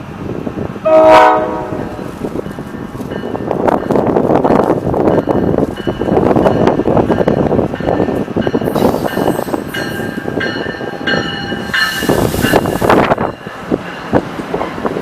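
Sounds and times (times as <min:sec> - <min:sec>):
train rumbling past: 0:00.0 - 0:15.0.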